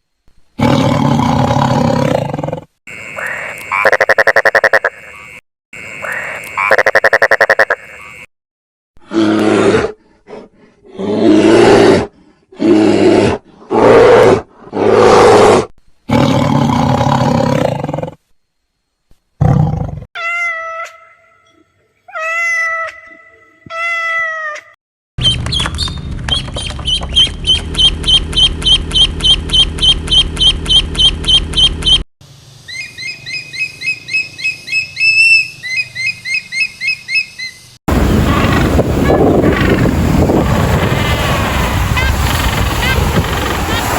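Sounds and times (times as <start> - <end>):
harsh roaring animal calls: 9.0 - 18.2
quick repeated chirps: 25.2 - 32.0.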